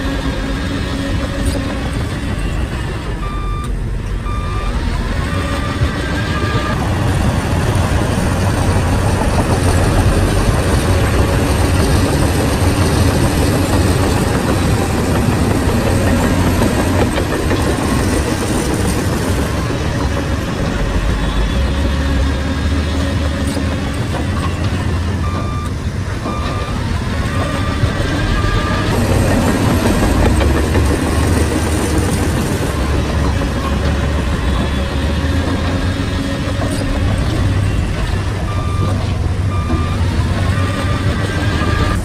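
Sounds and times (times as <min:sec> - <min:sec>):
bulldozer diesel engine running: 0:00.0 - 0:42.0
backup alarm beeping: 0:03.2 - 0:06.8, 0:24.4 - 0:29.4, 0:37.4 - 0:40.1.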